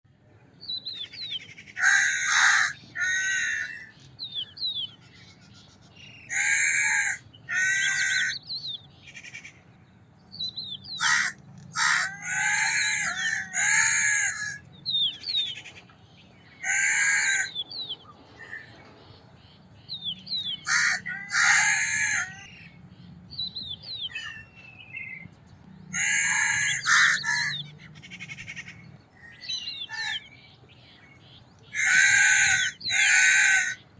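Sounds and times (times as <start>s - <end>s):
crow cawing: 1.8s - 3.9s, 6.3s - 8.4s, 11.0s - 14.6s, 16.6s - 17.6s, 20.6s - 22.5s, 25.9s - 28.8s, 31.7s - 33.8s.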